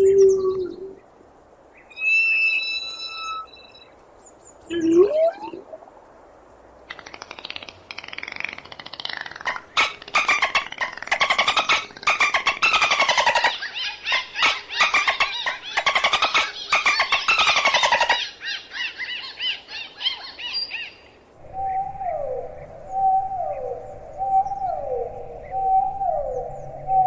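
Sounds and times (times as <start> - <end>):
dolphin chirps: 1.9 - 3.8, 4.7 - 5.6
low downward gliding whistle: 2.0 - 3.9, 21.4 - 27.0.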